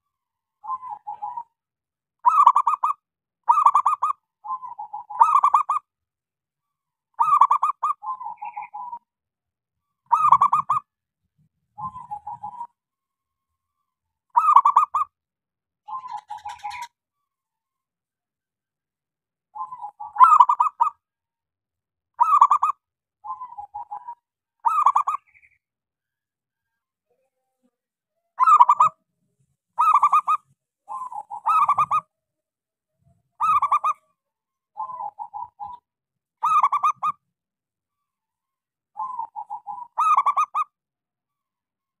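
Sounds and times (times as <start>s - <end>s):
dove cooing: 0.6s - 1.6s, 2.2s - 5.8s, 7.2s - 9.0s, 10.1s - 10.9s, 11.8s - 12.8s, 14.4s - 15.0s, 15.9s - 16.9s, 19.6s - 20.9s, 22.2s - 25.5s, 28.4s - 29.0s, 29.8s - 32.1s, 33.4s - 34.1s, 34.8s - 35.8s, 39.0s - 40.6s.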